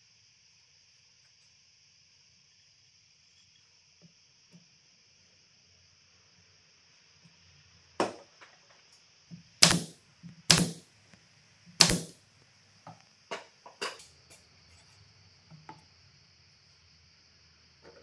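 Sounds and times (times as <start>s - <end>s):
loud knocks on wood: 9.6s - 10.8s, 11.8s - 12.1s.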